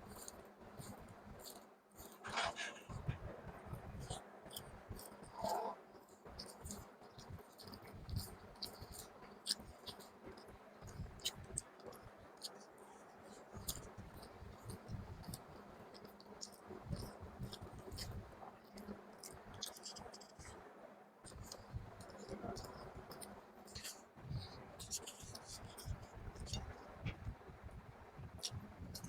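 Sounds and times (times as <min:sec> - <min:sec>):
person chewing: 0:00.0 - 0:03.2, 0:06.3 - 0:12.6, 0:13.5 - 0:18.2.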